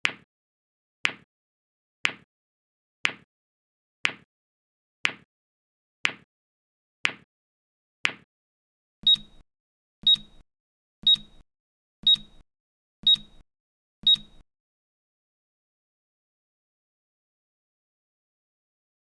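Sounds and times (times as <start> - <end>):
timer alarm beeps: 9.0 - 9.4, 10.0 - 10.4, 11.0 - 11.4, 12.0 - 12.4, 13.0 - 13.4, 14.0 - 14.4.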